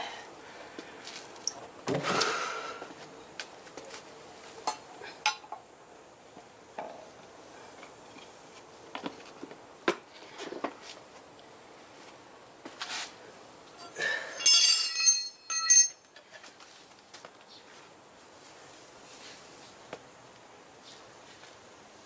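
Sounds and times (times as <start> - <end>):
metal tyre levers clinking: 13.8 - 16.1.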